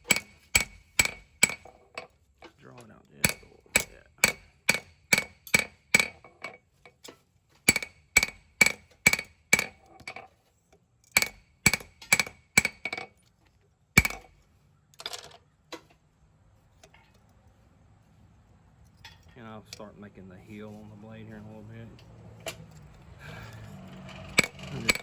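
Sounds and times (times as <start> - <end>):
hammer striking steel on anvil: 0.0 - 1.8, 3.2 - 6.3, 7.7 - 10.2, 11.1 - 13.1, 14.0 - 14.4, 23.4 - 25.0.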